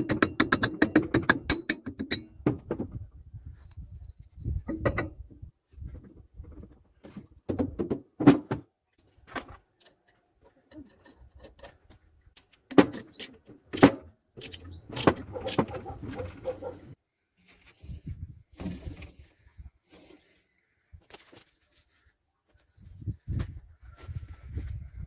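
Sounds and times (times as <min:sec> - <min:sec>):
metal tools clicking and clinking: 0:12.8 - 0:15.7.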